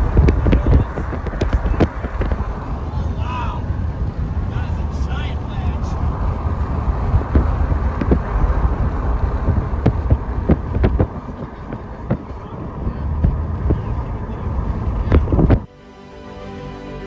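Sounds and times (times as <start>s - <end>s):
wind rumbling on microphone: 0.0s - 15.7s.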